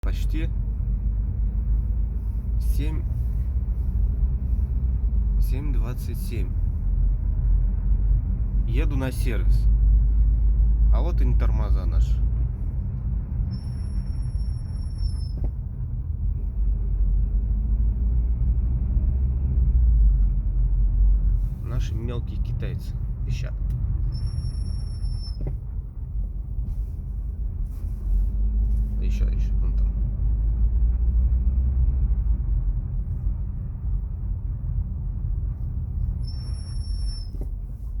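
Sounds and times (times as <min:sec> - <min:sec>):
moving car rumble: 0:00.0 - 0:38.0
brakes squealing: 0:11.2 - 0:19.9, 0:21.2 - 0:38.0
high-pitched brake squeal: 0:13.5 - 0:15.5, 0:24.1 - 0:25.5, 0:36.1 - 0:37.5.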